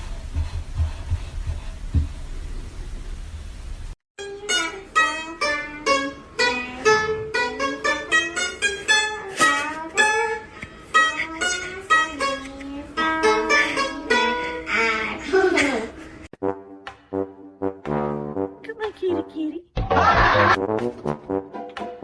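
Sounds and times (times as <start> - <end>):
plucked string instrument tune: 4.2 - 15.0.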